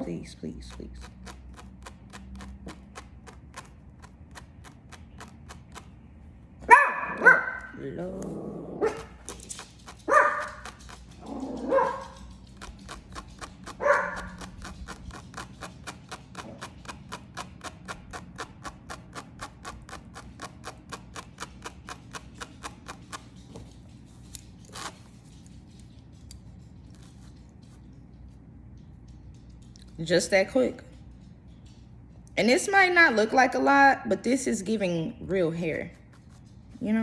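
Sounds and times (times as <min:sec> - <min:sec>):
fast run of small clicks: 0:00.0 - 0:06.4, 0:09.0 - 0:32.4
dog barking: 0:06.6 - 0:07.8, 0:08.8 - 0:09.4, 0:10.0 - 0:12.4, 0:13.6 - 0:14.5.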